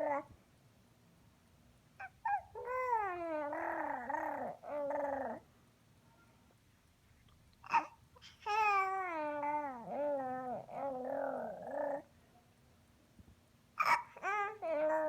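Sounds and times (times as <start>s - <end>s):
baby squeaking and growling: 0.0s - 0.3s, 2.0s - 5.4s, 7.7s - 12.0s, 13.8s - 15.0s.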